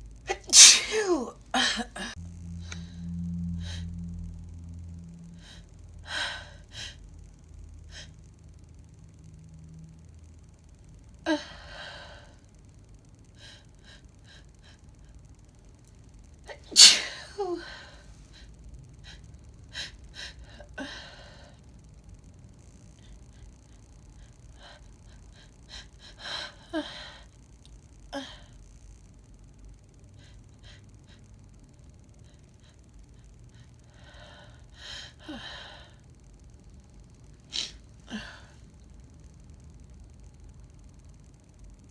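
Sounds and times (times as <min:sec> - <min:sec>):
woman sneezing: 0:00.3 - 0:02.2, 0:16.5 - 0:17.8.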